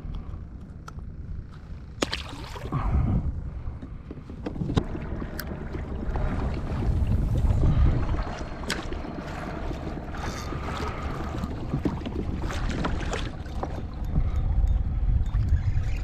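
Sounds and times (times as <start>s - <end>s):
wind buffeting microphone: 2.6s - 16.0s
water lapping against kayak hull: 3.8s - 14.4s.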